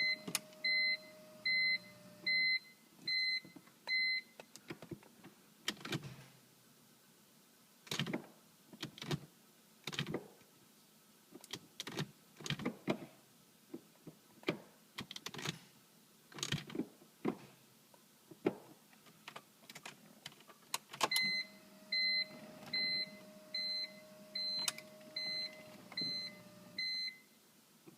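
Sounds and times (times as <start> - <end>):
electronic warning beep: 0.0 - 4.2, 21.2 - 27.2.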